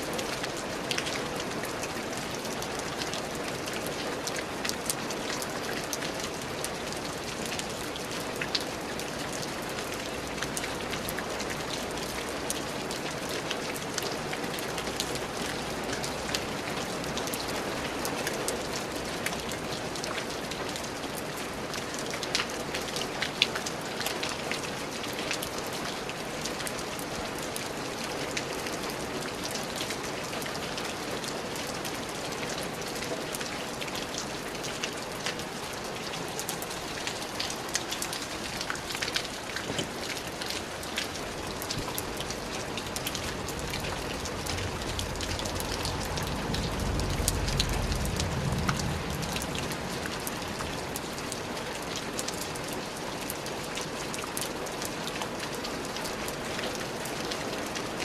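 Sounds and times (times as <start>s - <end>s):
rain on a hard surface: 0.0s - 58.0s
low rumble: 43.3s - 50.6s.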